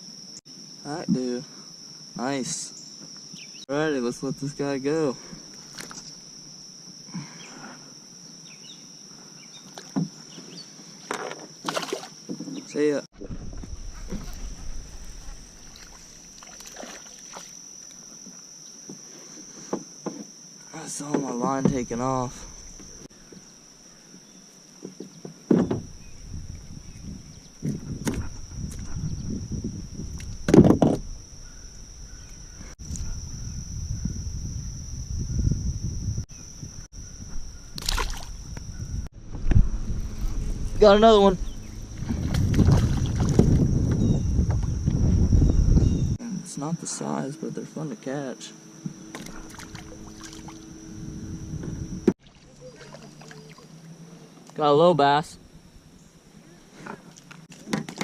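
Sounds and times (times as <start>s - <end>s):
faint high whine: 0.0s - 58.0s
high insect drone: 0.0s - 58.0s
water splashing: 11.6s - 12.2s, 14.0s - 17.6s, 37.8s - 38.4s, 42.0s - 43.7s, 49.1s - 50.8s, 52.2s - 53.9s
low rumbling handling noise: 12.5s - 16.7s, 24.9s - 46.2s, 48.8s - 52.2s
knocks on kayak side: 24.8s - 25.9s.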